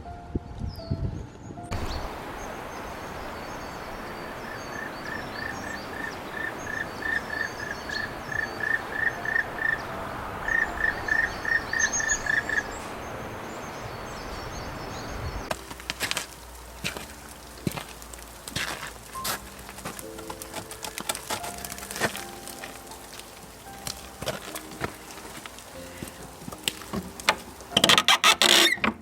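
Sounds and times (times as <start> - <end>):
high chirps: 1.6 - 15.7
steady rushing noise: 1.7 - 27.8.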